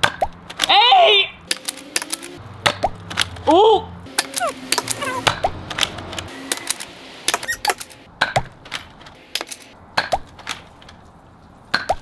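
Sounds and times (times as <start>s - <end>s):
short rising squeak: 4.2s - 5.4s, 7.3s - 7.9s.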